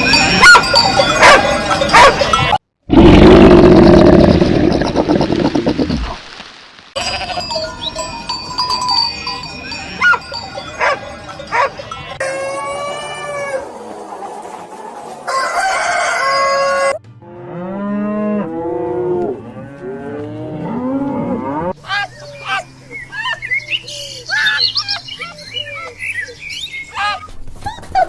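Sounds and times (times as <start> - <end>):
cowbells clanking: 0.0 - 2.6, 7.0 - 12.5
rooster crowing: 12.2 - 13.8, 15.3 - 17.0.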